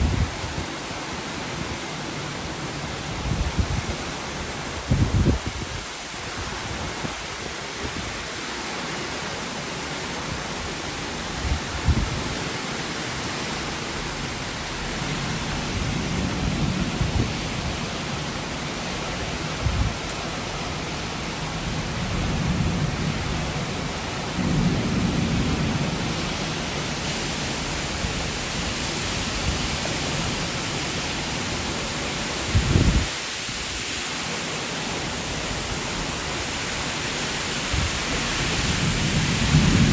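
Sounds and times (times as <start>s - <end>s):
heavy rain falling: 0.0s - 39.9s
thunder rumbling: 13.6s - 30.5s, 37.7s - 39.9s.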